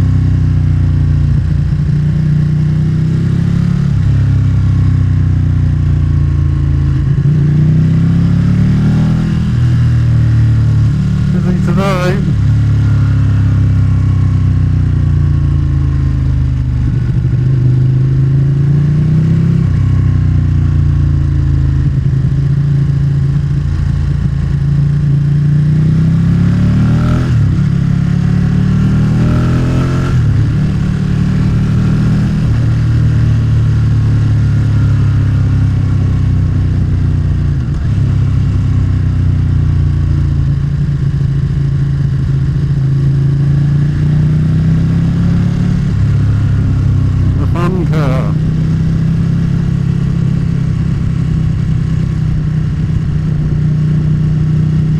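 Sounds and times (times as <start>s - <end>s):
motorcycle engine revving: 25.4s - 39.5s.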